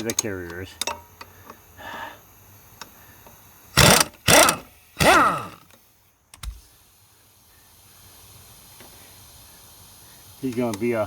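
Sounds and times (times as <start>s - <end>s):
impact wrench bursts: 3.8s - 5.6s.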